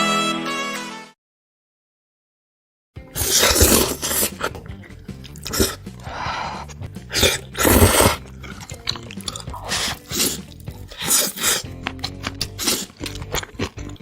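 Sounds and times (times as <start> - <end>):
background music: 0.0 - 1.2, 3.0 - 14.0
crunchy bites and chewing: 3.1 - 14.0.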